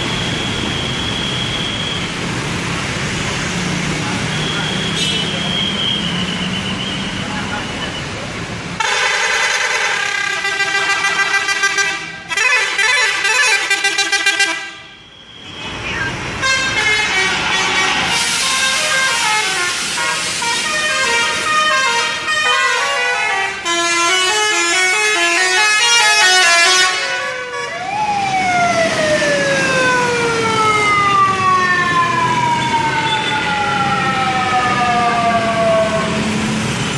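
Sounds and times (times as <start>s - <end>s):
musical multi-tone horns: 16.4s - 27.9s
siren-like falling tone: 27.8s - 36.3s.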